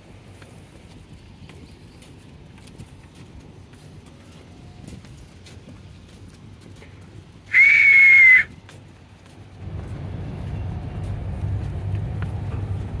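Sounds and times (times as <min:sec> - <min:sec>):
loud high whistle: 0:07.5 - 0:08.5
low rumble: 0:09.5 - 0:13.0.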